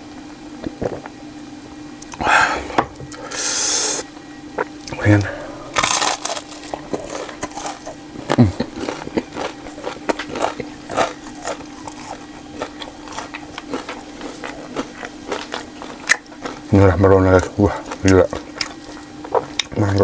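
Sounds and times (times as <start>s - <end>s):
faint steady hum: 0.0s - 20.0s
chewing and mouth smacks: 5.8s - 20.0s
gulping: 8.2s - 9.4s, 16.2s - 20.0s.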